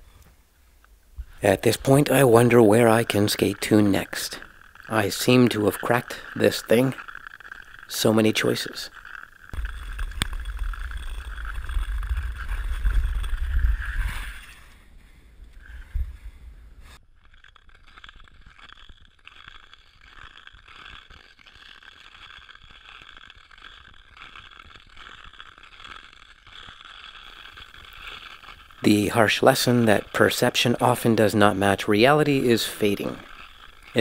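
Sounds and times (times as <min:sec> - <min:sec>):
skate blades scraping ice: 0:01.3 - 0:15.0, 0:16.8 - 0:34.0.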